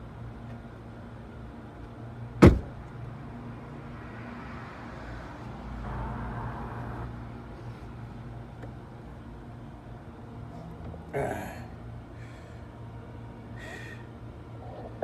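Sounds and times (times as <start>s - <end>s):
loud sharp bang: 2.4s - 2.8s.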